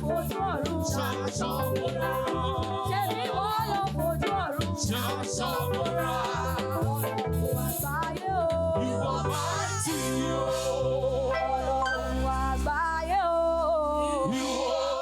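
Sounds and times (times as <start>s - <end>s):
praise band with drums: 0.0s - 8.6s
voices singing: 0.0s - 15.0s.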